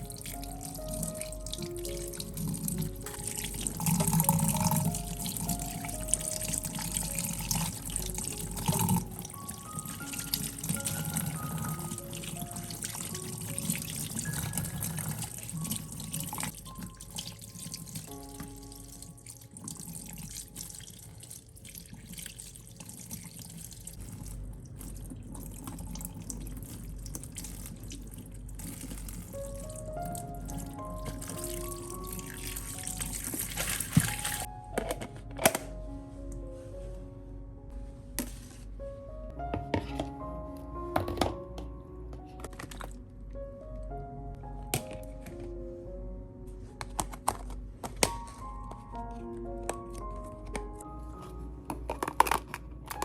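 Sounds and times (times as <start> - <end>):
tap water running into a sink: 0.0 - 34.5.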